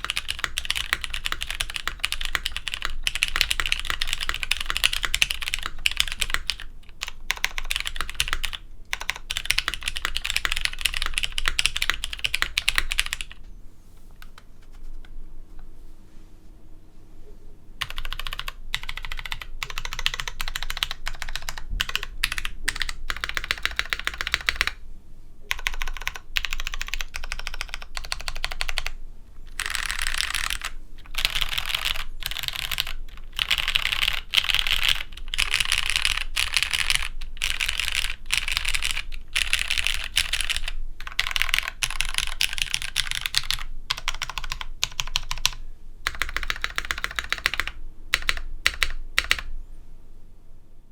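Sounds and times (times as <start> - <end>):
mechanical keyboard typing: 0.0 - 13.4, 17.8 - 24.8, 25.5 - 49.5.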